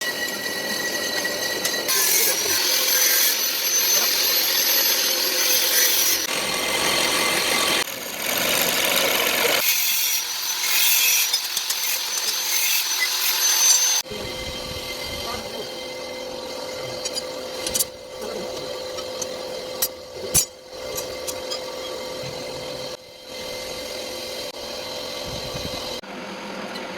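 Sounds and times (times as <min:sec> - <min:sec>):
tool grinding metal: 0:00.0 - 0:26.0.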